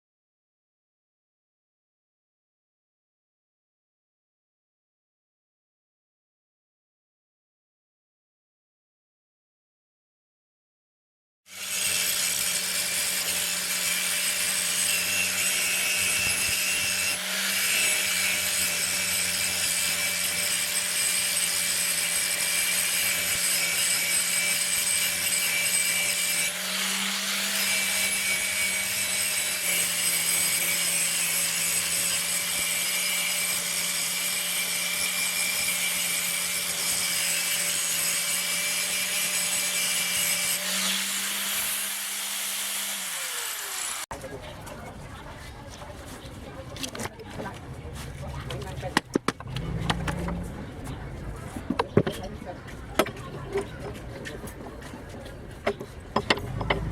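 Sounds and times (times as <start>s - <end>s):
electric power tool abrading: 11.5s - 44.1s.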